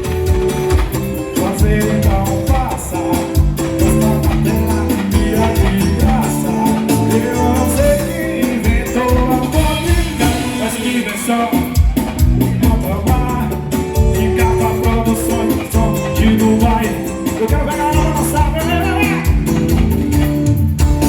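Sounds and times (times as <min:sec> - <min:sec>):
heavy pulsing bass beat: 0:00.0 - 0:21.0
loud music with singing: 0:00.0 - 0:21.0.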